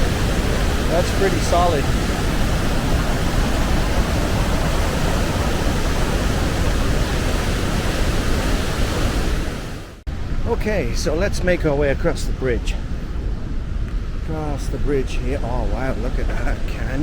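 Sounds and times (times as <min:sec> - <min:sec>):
waterfall roaring: 0:00.0 - 0:10.3.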